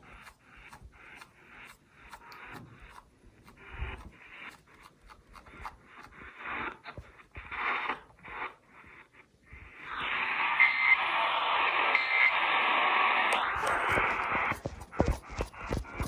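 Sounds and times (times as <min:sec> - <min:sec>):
faint radio tones: 0:00.0 - 0:16.0
radio static hiss: 0:06.1 - 0:16.0.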